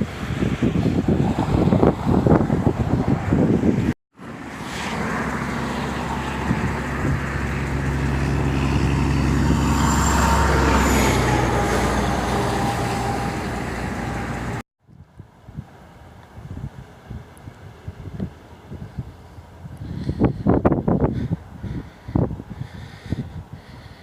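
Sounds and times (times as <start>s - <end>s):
motor vehicle running: 0.0s - 14.6s
wind on microphone: 0.0s - 24.0s.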